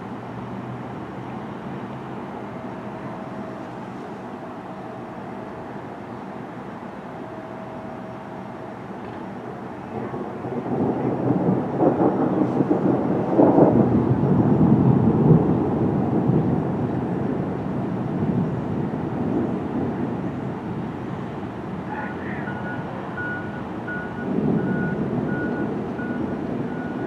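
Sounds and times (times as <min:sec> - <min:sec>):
rolling thunder: 0:07.7 - 0:21.9, 0:23.2 - 0:27.0.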